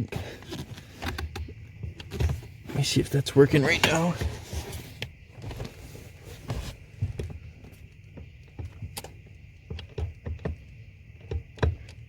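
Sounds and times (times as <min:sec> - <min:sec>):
knocks and clicks around brake pedal: 0:06.5 - 0:12.0.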